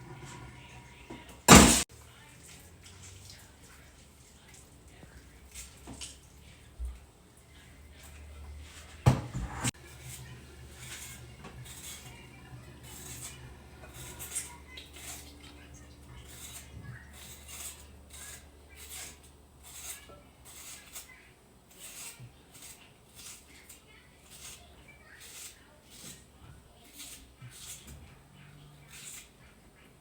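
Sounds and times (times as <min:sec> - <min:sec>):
utensils knocking and scraping dishes: 0:00.0 - 0:01.9, 0:08.1 - 0:21.2
loud knock: 0:01.5 - 0:01.8.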